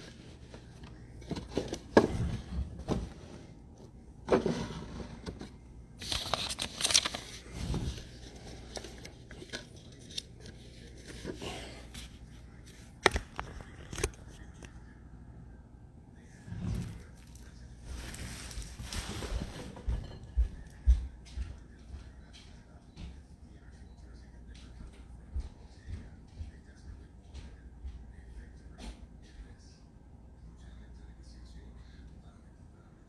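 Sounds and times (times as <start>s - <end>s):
packaging clicks and scrapes: 0.0s - 3.4s, 4.3s - 12.2s
packaging crinkling and tearing: 6.0s - 10.3s.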